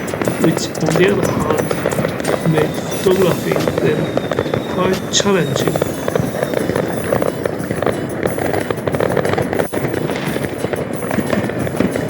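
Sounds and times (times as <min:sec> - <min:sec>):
fireworks bangs and crackles: 0:00.0 - 0:12.0.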